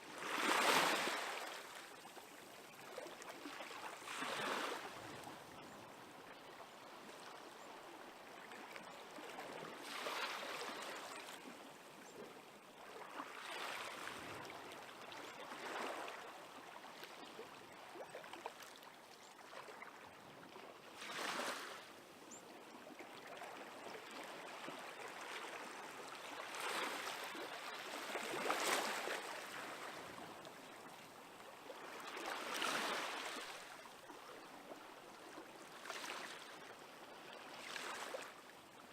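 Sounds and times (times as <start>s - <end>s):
small waves breaking gently: 0.0s - 38.9s.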